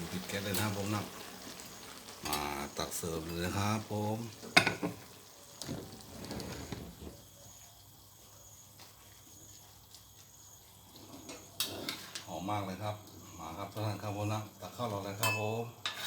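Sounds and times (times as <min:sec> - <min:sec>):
ladle clinking against pot: 0:15.2 - 0:16.0.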